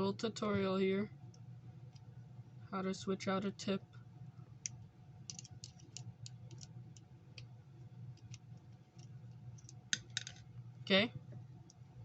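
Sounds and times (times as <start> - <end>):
faint low hum: 0.0 - 12.0
small clicks and ticks: 4.6 - 7.5, 8.2 - 10.4.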